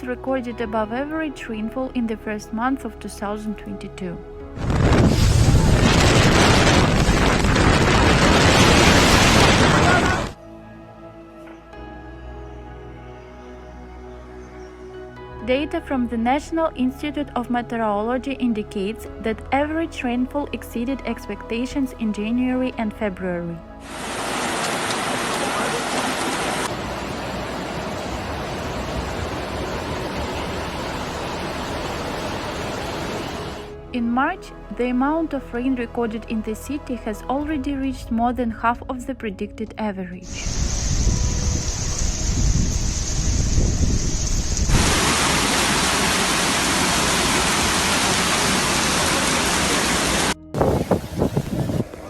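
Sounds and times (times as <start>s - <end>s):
heavy rain pouring: 4.6s - 10.4s, 23.8s - 33.7s, 40.3s - 52.0s
rushing floodwater: 4.7s - 10.4s, 23.8s - 33.7s, 44.7s - 52.0s.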